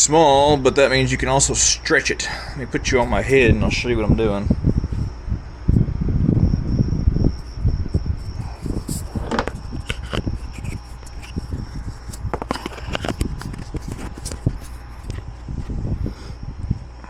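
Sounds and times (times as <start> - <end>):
camera handling knocks and rustles: 9.0 - 15.3.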